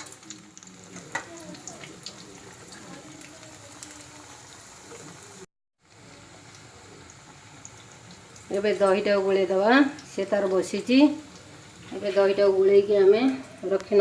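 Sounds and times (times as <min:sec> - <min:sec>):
faint background voices: 0:00.0 - 0:08.2
faint sizzling in a pan: 0:00.0 - 0:14.0.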